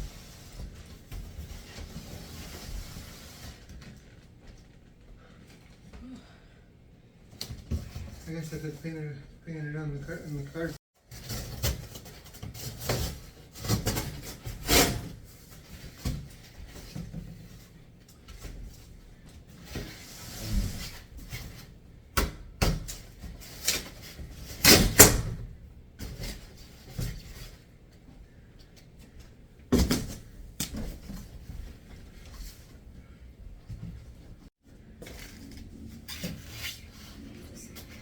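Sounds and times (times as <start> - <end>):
rustling scrape: 0.0 - 4.1, 34.8 - 38.0.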